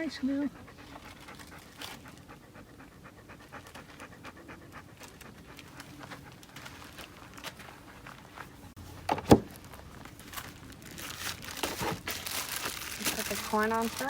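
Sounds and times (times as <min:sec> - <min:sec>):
dog panting: 0:00.0 - 0:08.7.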